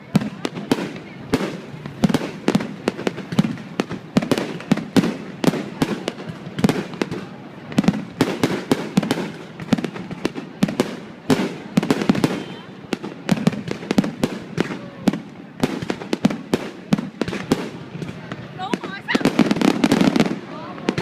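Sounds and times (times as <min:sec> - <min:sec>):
fireworks bursting: 0:00.0 - 0:21.0.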